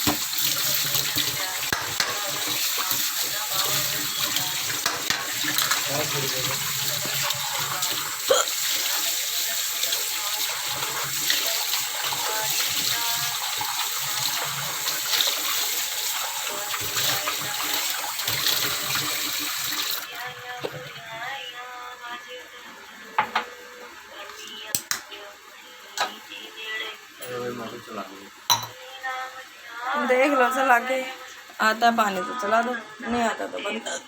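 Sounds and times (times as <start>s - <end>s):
tap running into a sink: 0.0s - 3.1s.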